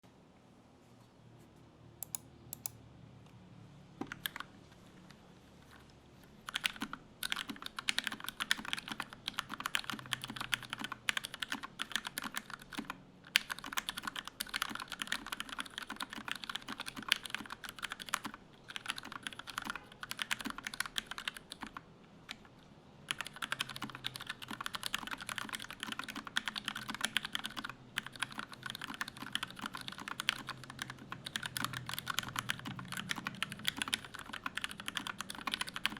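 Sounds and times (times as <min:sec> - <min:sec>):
typing on mechanical keyboard: 0:04.0 - 0:04.5, 0:06.4 - 0:22.5, 0:23.1 - 0:35.9.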